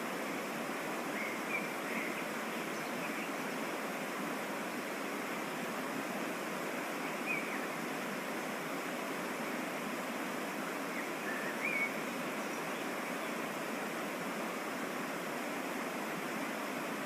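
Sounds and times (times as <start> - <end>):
waterfall and stream rushing: 0.0 - 17.0.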